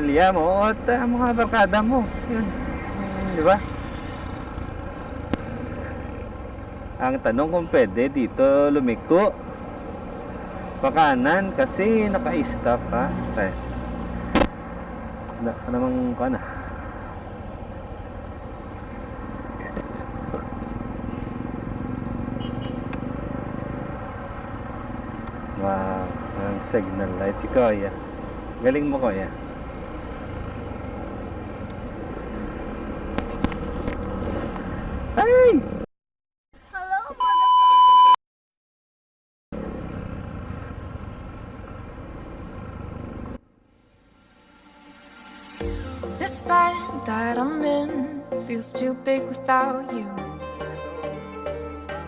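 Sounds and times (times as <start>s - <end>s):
road rumble: 0.0s - 35.9s, 39.6s - 50.2s
motorcycle engine running: 0.4s - 35.8s.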